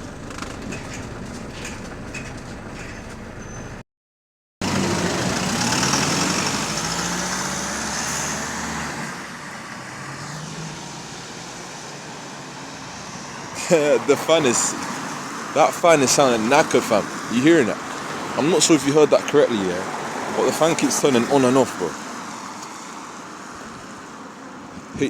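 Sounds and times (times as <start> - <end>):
bus engine running: 0.0 - 3.8, 4.6 - 10.2.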